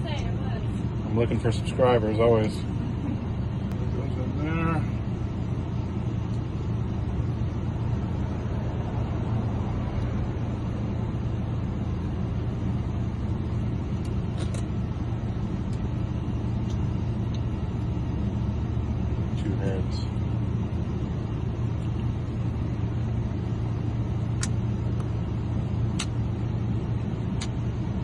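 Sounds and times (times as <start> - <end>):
vehicle engine idling: 0.0 - 28.0
faint small clicks: 25.9 - 26.2, 27.4 - 27.6.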